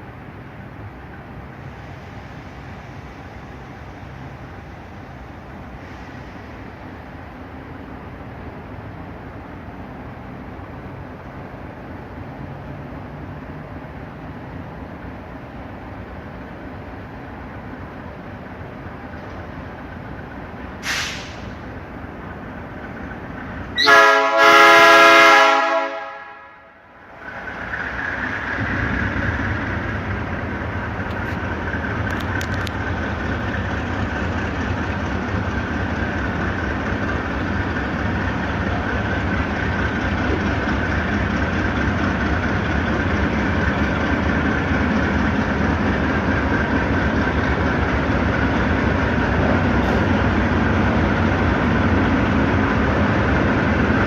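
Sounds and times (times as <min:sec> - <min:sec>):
train rumbling past: 0:00.0 - 0:54.0
train horn blast: 0:23.8 - 0:26.9.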